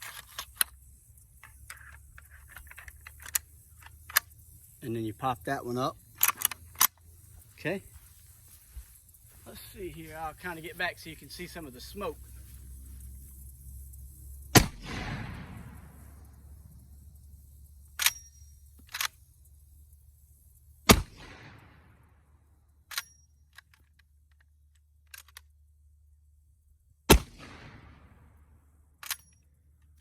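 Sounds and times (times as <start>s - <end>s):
shotgun blasts with echo: 14.5s - 16.0s, 20.9s - 21.9s, 27.1s - 28.2s.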